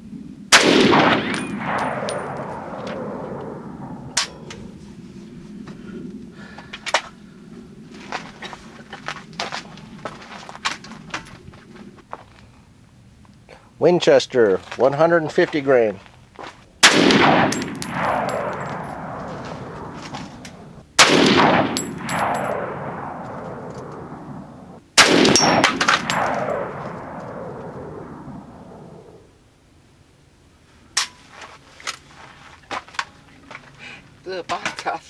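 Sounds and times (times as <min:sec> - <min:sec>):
rifle shots echoing: 0:00.5 - 0:04.5, 0:16.8 - 0:29.2.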